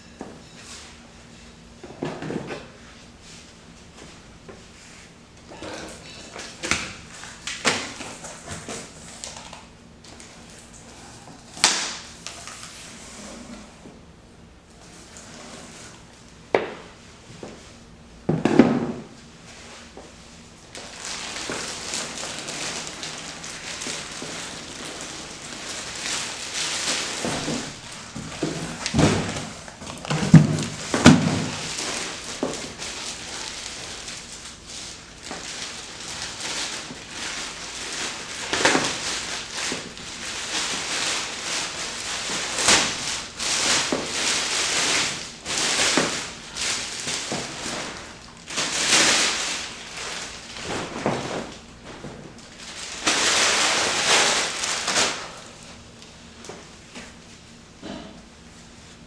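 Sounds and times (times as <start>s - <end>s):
packaging crinkling and rustling: 20.7s - 55.4s.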